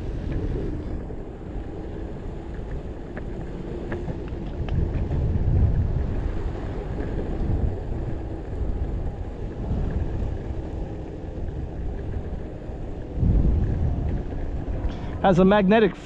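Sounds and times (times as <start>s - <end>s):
electric skateboard rolling rumble: 0.0s - 16.0s
wind buffeting microphone: 0.0s - 16.0s.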